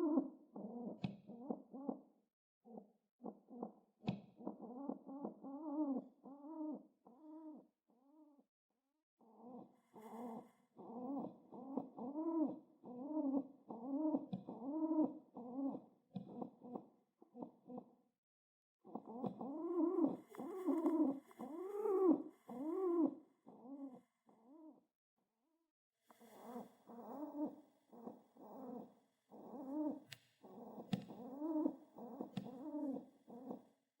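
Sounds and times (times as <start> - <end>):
pigeon cooing: 0.0 - 2.0, 4.4 - 8.3, 9.2 - 17.9, 18.9 - 24.8, 26.2 - 33.7
beak pecking the ground: 26.4 - 33.6.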